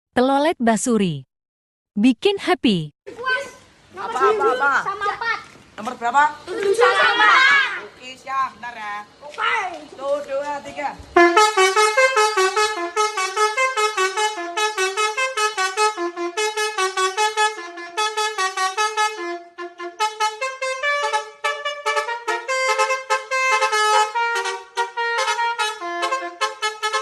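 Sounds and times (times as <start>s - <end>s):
musical bus horn tune: 11.2s - 27.0s.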